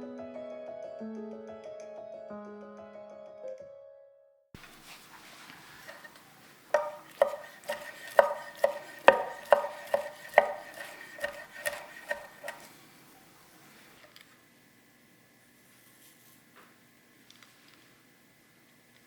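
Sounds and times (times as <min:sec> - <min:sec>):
knife chopping on cutting board: 0:05.8 - 0:06.1, 0:06.8 - 0:12.7.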